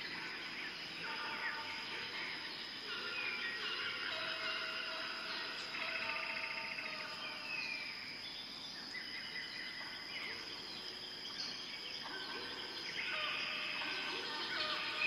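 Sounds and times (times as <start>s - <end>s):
high-pitched insect drone: 0.0s - 8.1s, 12.0s - 15.0s
bird calls: 0.0s - 15.0s.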